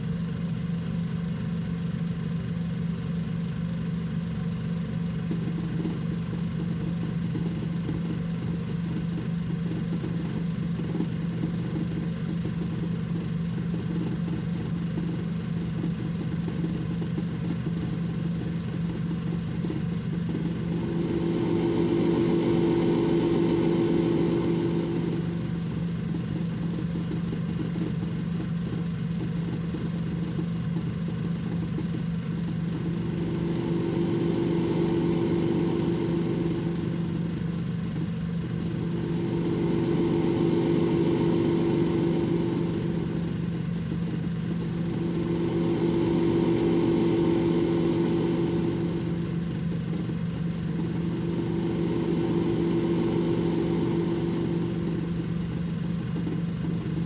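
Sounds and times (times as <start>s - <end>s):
low machine hum: 0.0s - 57.0s
rushing noise with higher tone: 20.3s - 26.2s, 32.6s - 56.9s.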